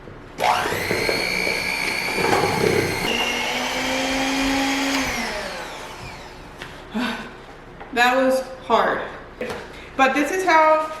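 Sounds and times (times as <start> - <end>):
electric mixer motor running: 0.4 - 6.6.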